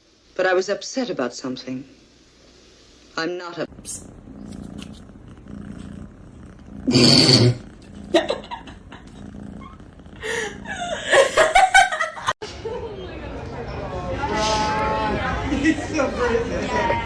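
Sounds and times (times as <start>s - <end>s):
cat purring: 3.6s - 11.9s.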